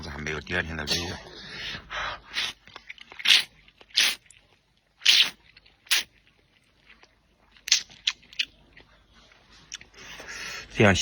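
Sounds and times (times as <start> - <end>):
wet mouth eating noises: 2.2 - 10.2.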